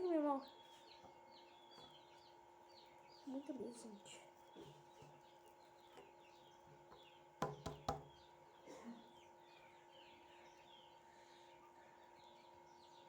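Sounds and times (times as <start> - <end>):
birds chirping: 0.0 - 13.0
faint steady hum: 0.0 - 13.0
quick knocks: 7.4 - 8.1.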